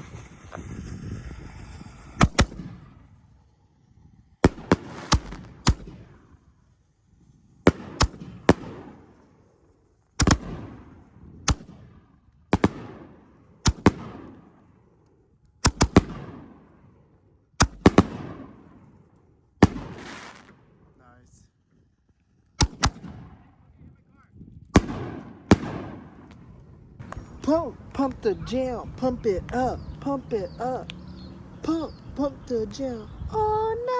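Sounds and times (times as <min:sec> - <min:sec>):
fireworks bangs with echo: 0:00.0 - 0:03.2, 0:04.4 - 0:06.5, 0:07.7 - 0:09.4, 0:10.2 - 0:14.8, 0:15.7 - 0:17.0, 0:17.6 - 0:21.0, 0:22.6 - 0:23.7, 0:24.7 - 0:27.2.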